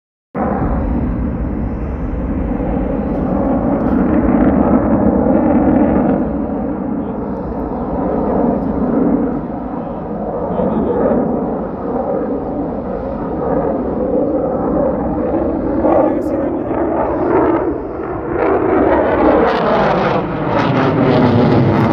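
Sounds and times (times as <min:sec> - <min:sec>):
jet engines rumbling: 0:00.4 - 0:21.9.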